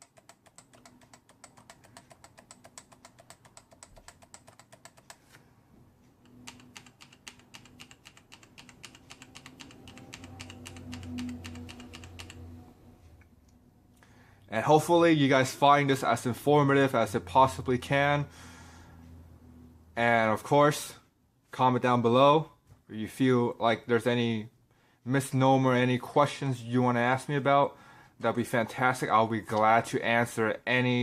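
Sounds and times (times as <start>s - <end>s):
keyboard keys clicking: 0.0s - 5.2s, 6.2s - 12.5s.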